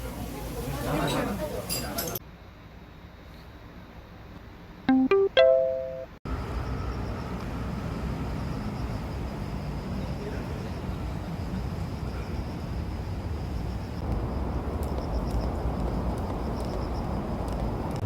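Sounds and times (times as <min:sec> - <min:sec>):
short ringing notes: 0:04.9 - 0:06.2.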